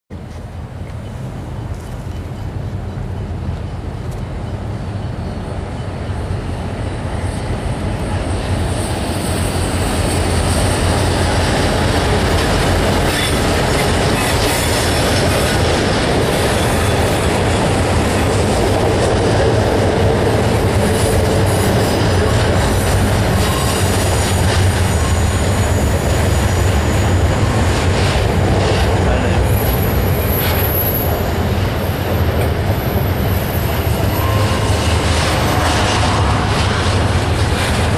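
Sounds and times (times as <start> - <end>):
locomotive engine drone: 0.1 - 37.9
high wheel squeal: 13.1 - 15.6, 16.2 - 17.6, 20.8 - 27.7, 32.7 - 36.7.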